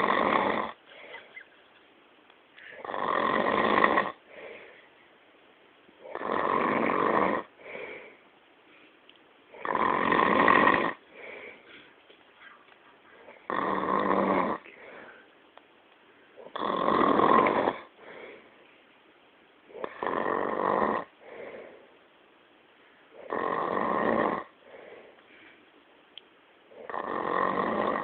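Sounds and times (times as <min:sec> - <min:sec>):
loud snoring: 0:00.0 - 0:00.8, 0:02.7 - 0:04.2, 0:06.0 - 0:07.5, 0:09.5 - 0:11.0, 0:13.4 - 0:14.7, 0:16.4 - 0:17.9, 0:19.7 - 0:21.1, 0:23.2 - 0:24.6, 0:26.7 - 0:28.0
soft breath: 0:00.8 - 0:01.6, 0:04.2 - 0:05.3, 0:07.5 - 0:09.1, 0:11.0 - 0:13.5, 0:14.6 - 0:16.5, 0:17.9 - 0:19.0, 0:21.2 - 0:22.1, 0:24.6 - 0:25.8.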